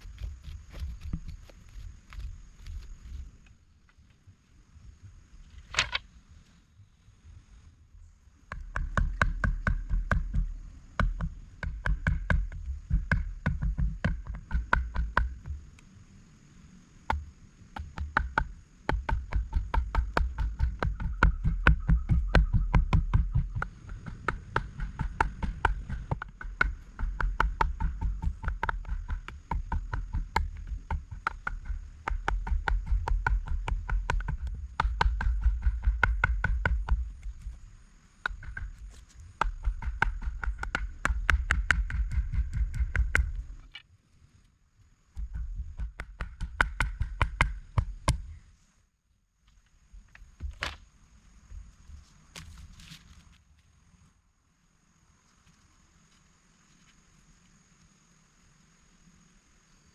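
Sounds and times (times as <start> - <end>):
rapid regular knocking: 17.1 - 37.2, 38.3 - 43.5, 45.2 - 48.2.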